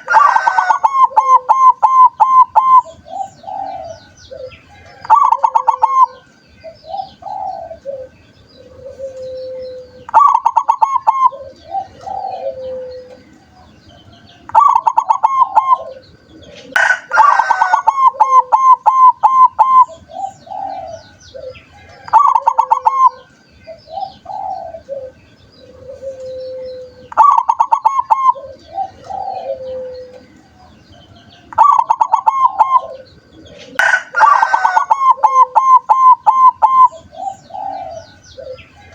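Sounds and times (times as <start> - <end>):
dove cooing: 0.0 - 38.9.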